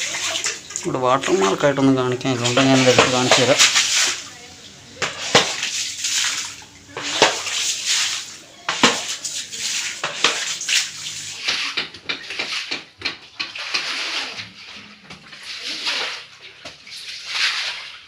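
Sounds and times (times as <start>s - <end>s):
floodwater splashing and sloshing: 0.0s - 18.0s
sharp knocks and clatters: 2.4s - 4.1s, 5.0s - 5.6s, 11.3s - 14.0s.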